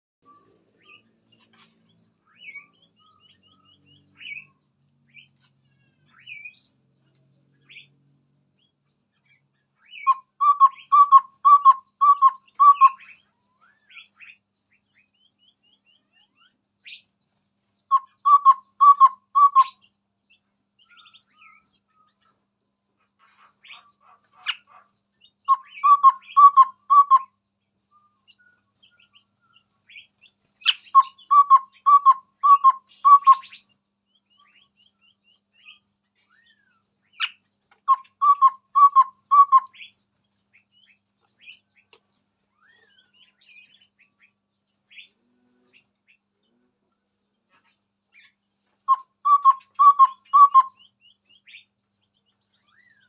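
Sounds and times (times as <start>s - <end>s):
bird high chirps and twitters: 0.2s - 46.4s, 47.3s - 53.0s
bird low hooting notes: 10.0s - 13.1s, 17.9s - 19.8s, 25.5s - 27.3s, 30.9s - 33.6s, 37.9s - 39.9s, 48.9s - 50.9s.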